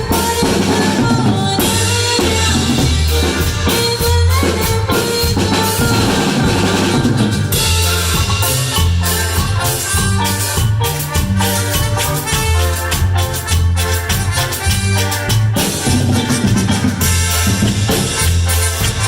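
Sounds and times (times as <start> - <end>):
band music: 0.0 - 19.0
drum kit: 0.0 - 19.0
repeating bass line: 0.0 - 19.0.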